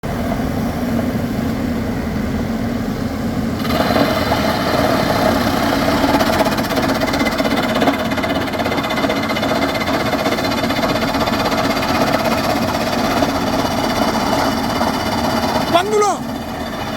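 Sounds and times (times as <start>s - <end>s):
rapid drill clatter: 3.6s - 16.9s
rock drill rig running: 3.6s - 16.9s.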